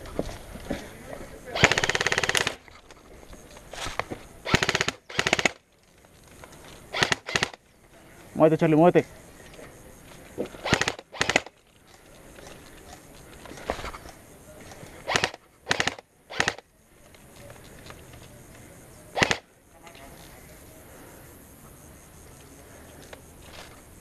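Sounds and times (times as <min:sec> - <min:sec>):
airsoft guns firing rapid bursts: 0:01.5 - 0:02.6, 0:04.4 - 0:05.6, 0:06.9 - 0:07.6, 0:10.6 - 0:11.5, 0:15.0 - 0:16.6, 0:19.2 - 0:19.4.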